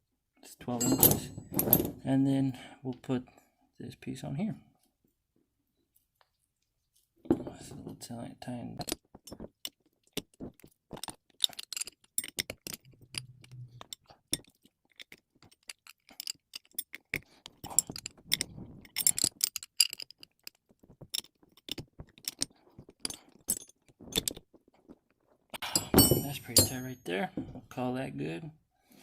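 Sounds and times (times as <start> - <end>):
metal parts scraping: 0.7 - 2.0, 11.0 - 24.4
small metal parts clinking: 0.7 - 2.0, 8.8 - 24.5, 25.7 - 27.0.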